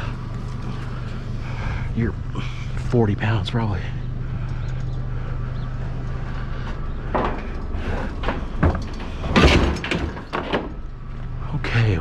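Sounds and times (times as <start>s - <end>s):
steady low hum: 0.0s - 12.0s
heavy scrap knocking and scraping: 6.5s - 10.8s.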